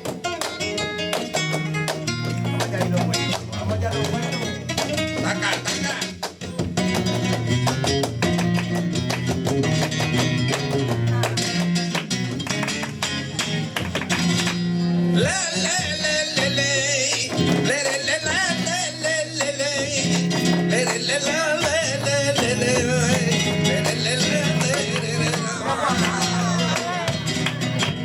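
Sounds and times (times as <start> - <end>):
flamenco guitar playing: 0.0 - 28.0
man singing ornamented line: 15.2 - 27.2.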